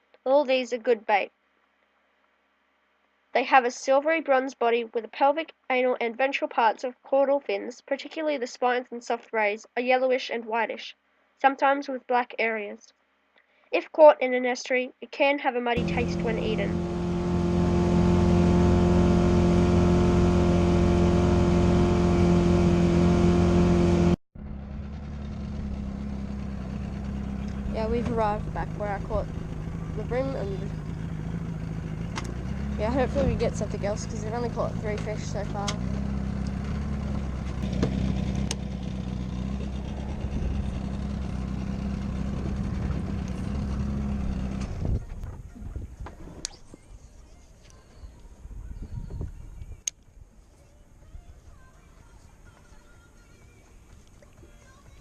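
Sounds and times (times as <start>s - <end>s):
engine loud even hum: 15.8s - 46.7s
quieter engine drone: 15.8s - 48.6s.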